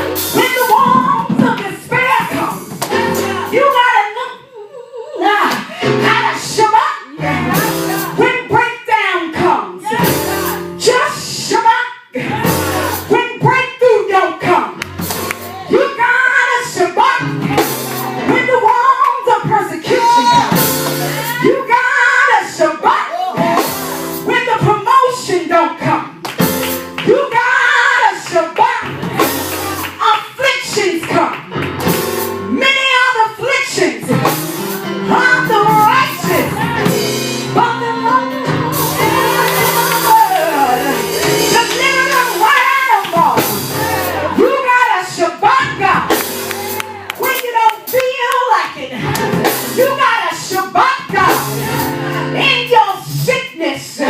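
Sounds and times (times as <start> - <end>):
instrumental backing: 0.0 - 4.4, 5.3 - 11.6, 12.2 - 21.9, 23.1 - 54.0
voices singing worship music: 0.0 - 8.6, 9.7 - 13.5, 14.1 - 26.2, 27.0 - 31.4, 32.5 - 54.0
shouts and whoops: 19.8 - 20.5, 22.9 - 23.6.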